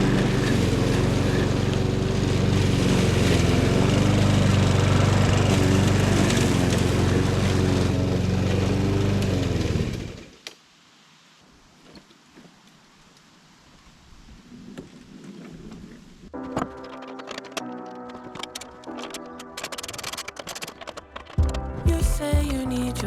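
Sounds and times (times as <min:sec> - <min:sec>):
small lawn mower engine running: 0:00.0 - 0:10.4, 0:16.4 - 0:21.6.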